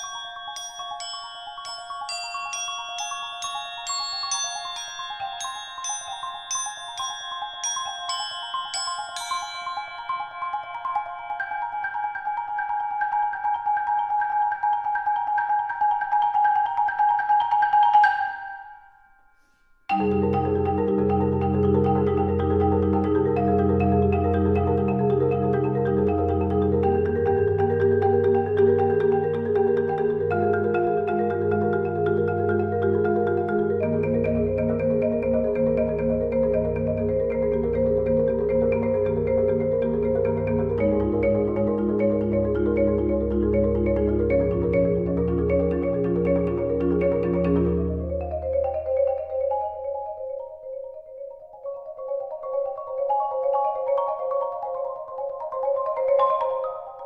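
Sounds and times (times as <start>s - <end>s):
background music: 19.9s - 49.0s
light melody of struck notes: 19.9s - 50.5s.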